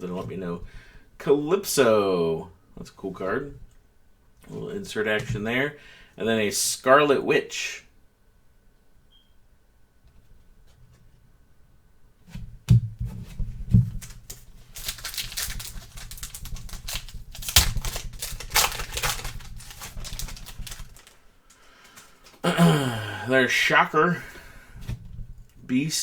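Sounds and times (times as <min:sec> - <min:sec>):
cards being handled: 0:13.1 - 0:22.4
wrapper crinkling and tearing: 0:13.9 - 0:22.4.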